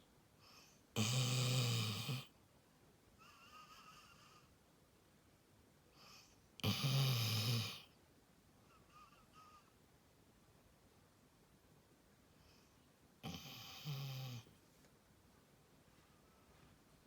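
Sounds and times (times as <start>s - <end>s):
dog snoring: 0.6s - 2.3s, 6.0s - 7.9s, 13.2s - 14.5s.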